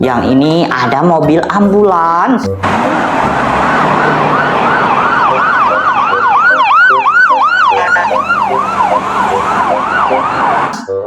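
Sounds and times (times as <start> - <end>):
ambulance siren yelping: 2.5 - 11.0.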